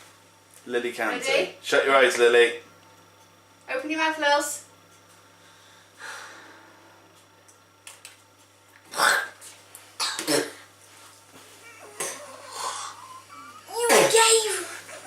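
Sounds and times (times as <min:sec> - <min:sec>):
soft breath: 0:05.4 - 0:07.1
child coughing: 0:10.0 - 0:10.6, 0:11.9 - 0:14.8.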